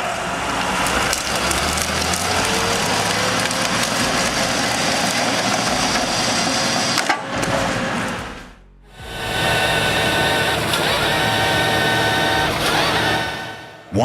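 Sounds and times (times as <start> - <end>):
wood-processing machine engine: 0.0 - 14.0
wood crunching and splintering: 0.6 - 13.6
wood cracks: 0.7 - 8.6.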